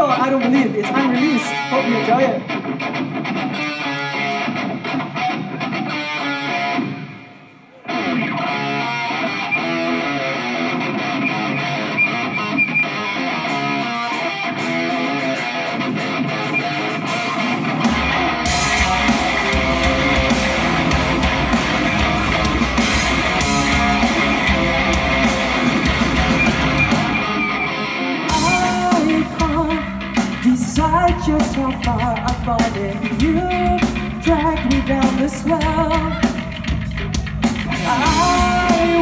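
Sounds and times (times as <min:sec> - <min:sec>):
electric guitar: 0:00.0 - 0:39.0
rock band playing loudly: 0:00.0 - 0:39.0
bass guitar: 0:08.2 - 0:39.0
drums with cymbals: 0:13.5 - 0:27.4, 0:28.3 - 0:39.0.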